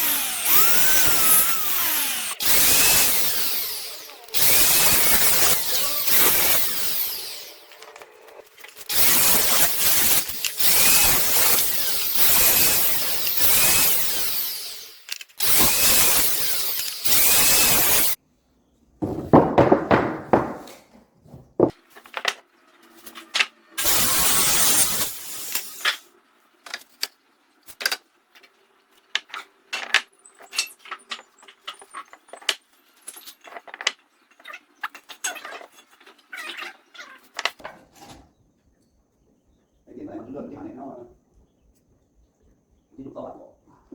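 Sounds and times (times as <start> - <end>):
power tool running: 0.0 - 8.1, 8.8 - 18.2, 23.8 - 26.0
wood and tools clicking and knocking: 3.6 - 9.6, 15.0 - 15.7, 19.0 - 23.6, 26.6 - 36.4, 37.2 - 38.3.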